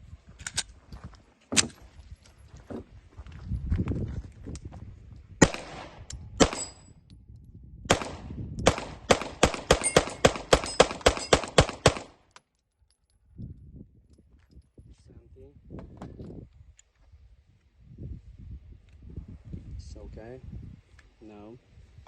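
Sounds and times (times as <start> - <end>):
pistol gunshots: 5.4 - 6.8, 7.9 - 12.2.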